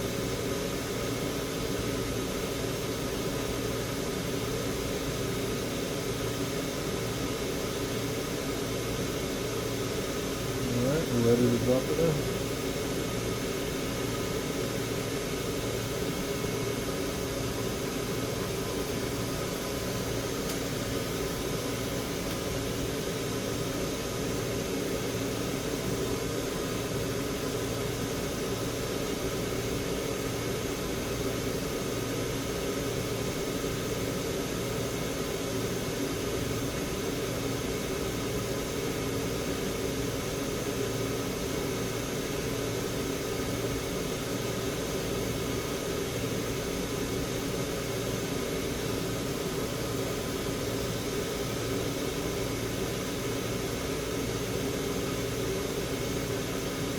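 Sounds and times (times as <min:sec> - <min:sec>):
fan blowing air with hum: 0:00.0 - 0:56.9.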